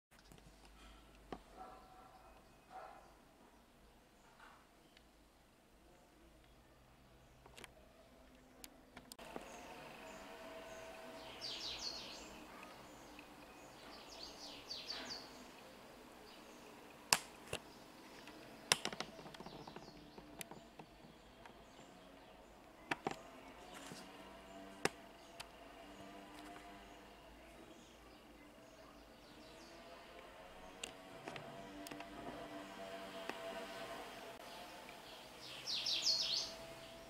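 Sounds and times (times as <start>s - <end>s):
sharp knocks and clicks: 18.2s - 21.6s.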